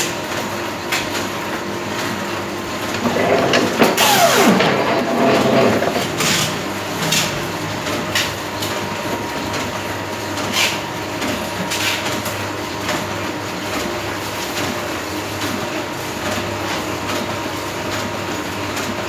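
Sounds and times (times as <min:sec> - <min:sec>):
cutting machine humming and whining: 0:01.8 - 0:09.8
machine clacking: 0:02.0 - 0:08.8.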